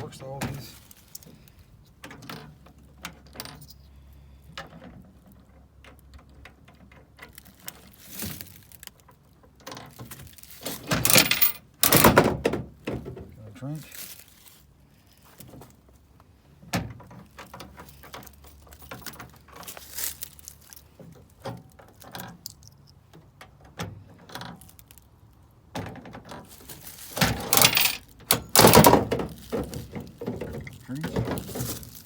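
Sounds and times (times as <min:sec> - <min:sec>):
vending machine rattling clatters: 0:09.8 - 0:12.5, 0:26.0 - 0:32.0
vending machine clicks and knocks: 0:10.8 - 0:13.1, 0:27.2 - 0:31.5.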